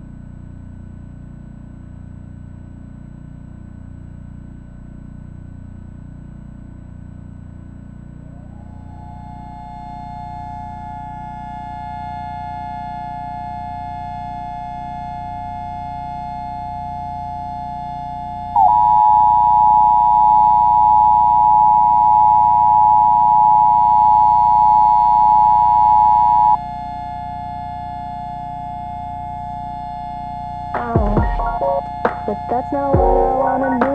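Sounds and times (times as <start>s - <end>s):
synthesizer drone: 8.2s - 11.4s, 30.6s - 33.9s
two-tone alert signal: 18.6s - 26.6s, 30.8s - 33.9s.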